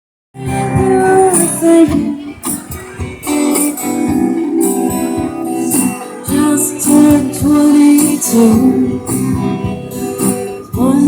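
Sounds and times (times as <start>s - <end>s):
guitar chords: 0.4s - 11.0s.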